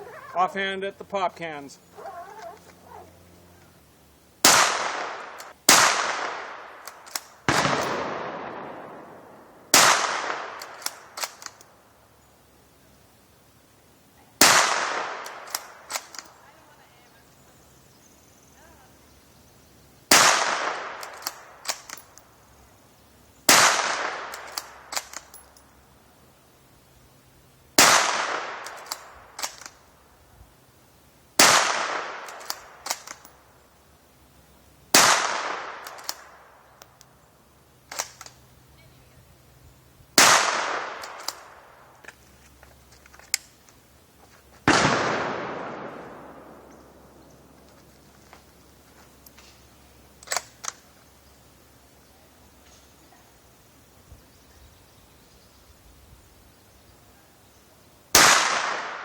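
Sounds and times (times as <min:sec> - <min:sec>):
rifle shots echoing: 0:04.4 - 0:11.6, 0:14.4 - 0:16.3, 0:20.1 - 0:22.1, 0:23.5 - 0:25.4, 0:27.8 - 0:29.8, 0:31.4 - 0:33.3, 0:34.9 - 0:36.6, 0:40.2 - 0:41.9, 0:44.6 - 0:47.6, 0:58.1 - 0:59.0
rifle bolt clicks: 0:06.8 - 0:08.0, 0:10.6 - 0:11.7, 0:15.2 - 0:16.3, 0:21.0 - 0:22.3, 0:24.3 - 0:25.6, 0:28.6 - 0:29.8, 0:32.2 - 0:33.4, 0:35.8 - 0:37.1, 0:37.9 - 0:38.4, 0:41.0 - 0:41.5, 0:50.2 - 0:50.8.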